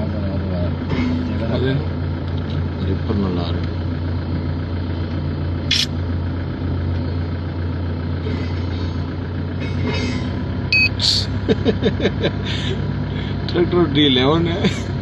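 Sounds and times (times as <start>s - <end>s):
diesel machinery drone: 0.0s - 15.0s
high beep: 10.7s - 11.0s.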